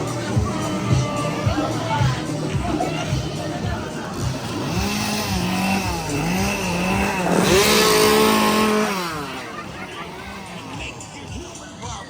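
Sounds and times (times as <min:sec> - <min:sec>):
chainsaw engine revving: 0:00.0 - 0:11.3.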